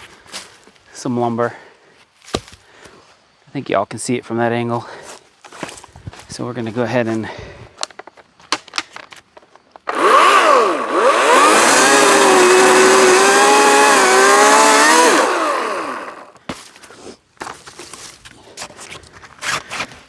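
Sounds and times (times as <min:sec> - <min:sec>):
electric chainsaw cutting branch: 0:09.8 - 0:16.4.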